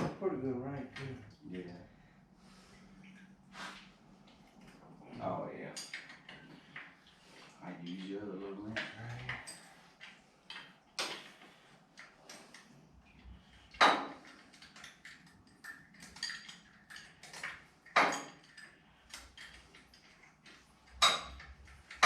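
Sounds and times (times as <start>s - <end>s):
hand tools clicking and clinking: 7.8s - 12.8s, 13.4s - 22.0s.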